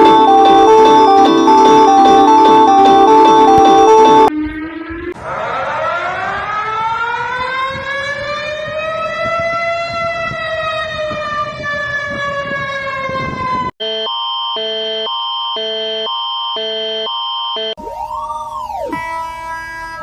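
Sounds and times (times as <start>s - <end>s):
pulsing multi-pitch alarm tone: 0.0s - 7.8s, 13.8s - 20.0s
emergency siren winding: 0.0s - 20.0s.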